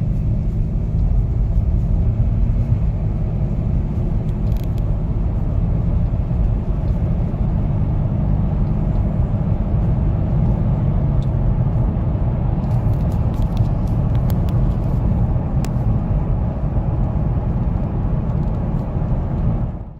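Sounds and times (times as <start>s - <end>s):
car engine running: 0.0s - 19.9s
faint light ticks: 5.9s - 7.3s.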